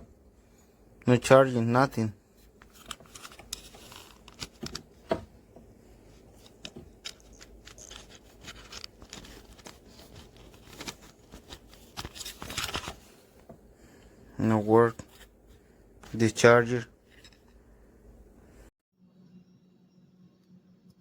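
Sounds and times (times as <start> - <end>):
small plastic clicks and rustles: 2.6 - 5.2, 6.4 - 13.1.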